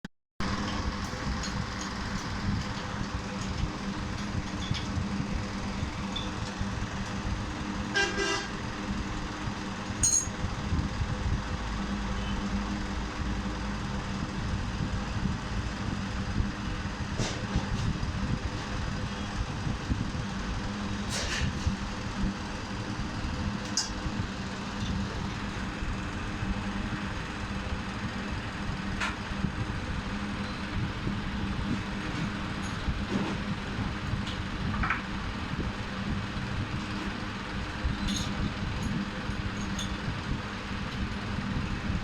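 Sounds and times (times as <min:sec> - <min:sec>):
vehicle horn tooting: 0:07.9 - 0:08.6.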